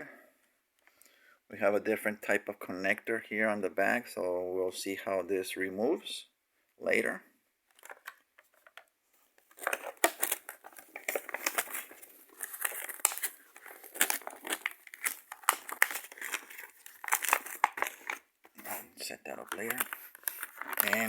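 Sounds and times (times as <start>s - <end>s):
plastic packaging crinkling: 9.4s - 21.0s.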